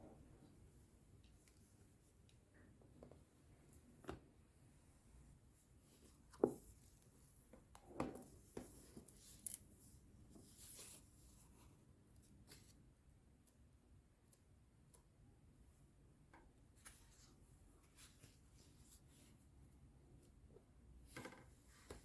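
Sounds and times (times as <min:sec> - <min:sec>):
soft handling knocks and taps: 0:06.0 - 0:09.2.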